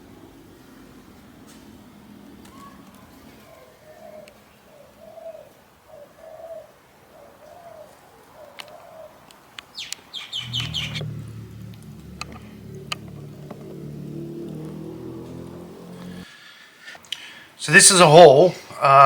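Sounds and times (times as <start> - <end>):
dove cooing: 3.5 - 9.2, 10.3 - 15.0
high bird chirps: 9.8 - 11.8
steady low hum: 10.4 - 15.2.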